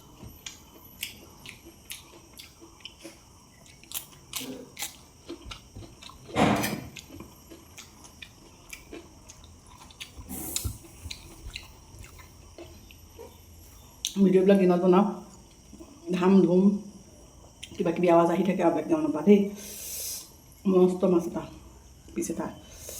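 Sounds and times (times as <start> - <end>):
person chewing food: 0.0 - 14.2
short hiss: 10.3 - 10.8.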